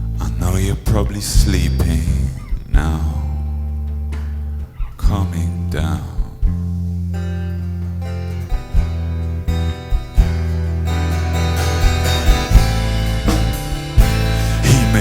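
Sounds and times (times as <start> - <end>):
bass notes: 0.0 - 15.0
electric guitars: 0.0 - 15.0
drum hits: 8.5 - 15.0.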